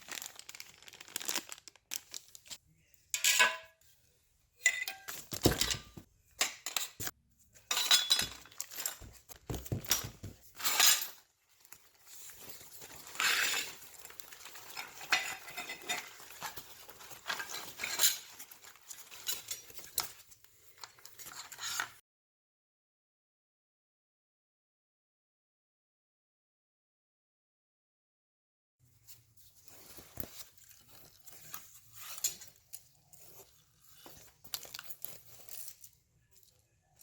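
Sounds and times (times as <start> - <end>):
metal tools clinking: 3.2 - 3.8, 4.6 - 11.3, 12.9 - 20.0.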